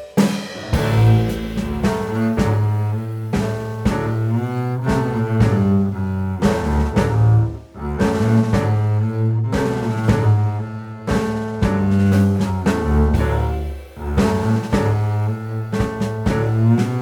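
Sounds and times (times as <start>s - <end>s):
music with deep bass and beat: 0.7s - 4.1s.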